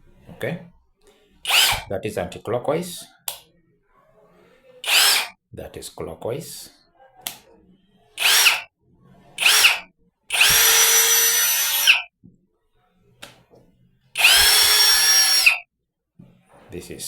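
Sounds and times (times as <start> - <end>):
cordless drill whining: 1.4 - 1.9, 4.8 - 5.4, 8.2 - 8.7, 9.4 - 12.1, 14.2 - 15.6.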